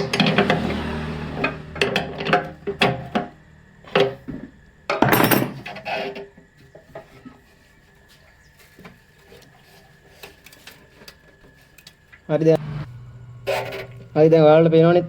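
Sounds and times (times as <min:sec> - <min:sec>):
tools and metal parts knocking: 0:01.4 - 0:03.3, 0:04.9 - 0:05.8.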